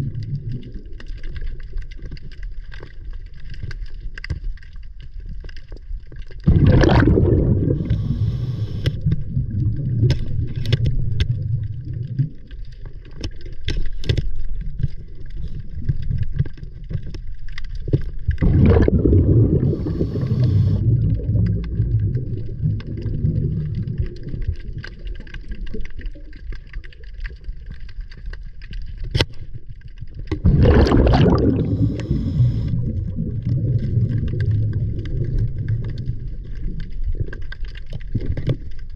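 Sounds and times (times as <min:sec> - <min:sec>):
ocean water rushing and sloshing: 0:06.4 - 0:12.5, 0:18.3 - 0:25.0, 0:30.3 - 0:36.9.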